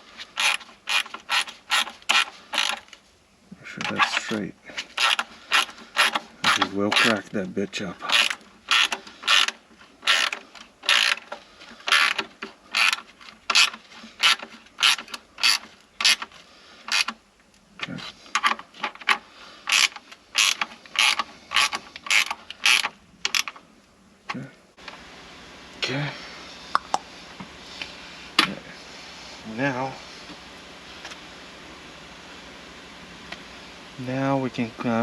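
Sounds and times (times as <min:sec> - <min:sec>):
ratchet wrench clicking: 0:00.4 - 0:02.8, 0:05.0 - 0:07.2, 0:08.1 - 0:16.2, 0:16.9 - 0:17.2, 0:19.6 - 0:23.6.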